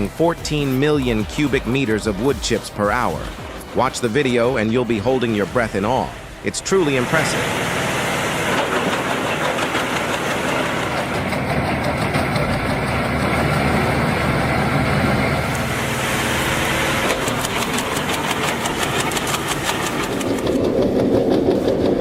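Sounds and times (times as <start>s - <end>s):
wood chipper shredding wood: 3.0s - 22.0s
rapid clatter: 8.3s - 14.4s, 15.5s - 22.0s.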